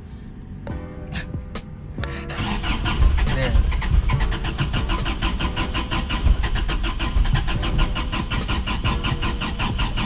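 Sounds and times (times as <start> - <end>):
engine cranking on starter motor: 2.3 - 10.0.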